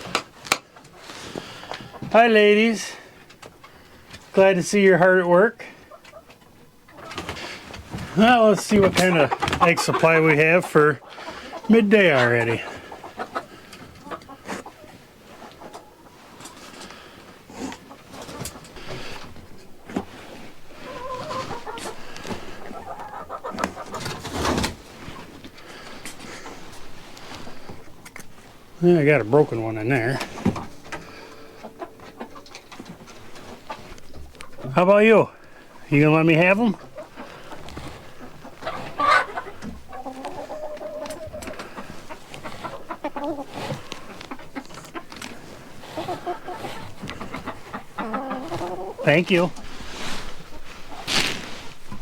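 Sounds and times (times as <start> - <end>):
hens clucking: 0.0 - 52.0
drawn-out hen call: 5.7 - 50.9
knocks and rustling: 29.4 - 34.6.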